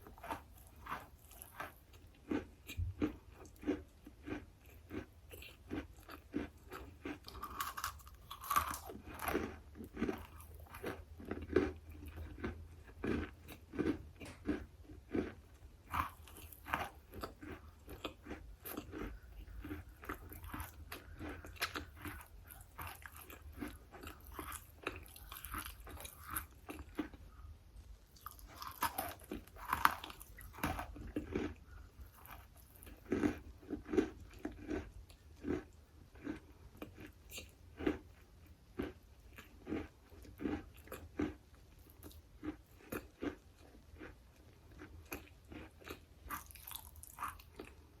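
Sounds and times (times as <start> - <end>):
crunchy chewing: 0.0 - 48.0.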